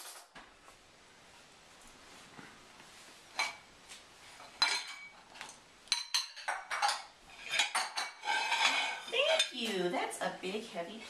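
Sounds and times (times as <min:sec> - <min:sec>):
silverware clinking on metal rack: 0:04.4 - 0:09.8.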